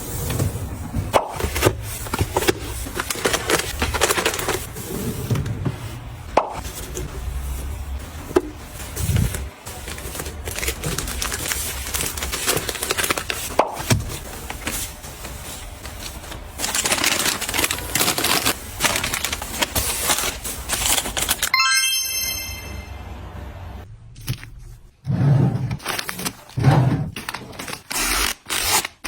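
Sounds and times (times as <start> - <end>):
high ringing tones stepping upward: 21.5 - 23.2.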